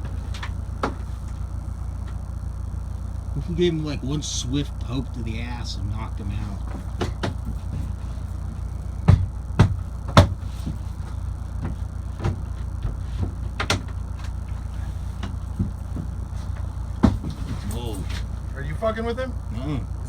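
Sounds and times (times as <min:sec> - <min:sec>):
sharp knocks: 0:06.6 - 0:08.0, 0:09.0 - 0:10.9.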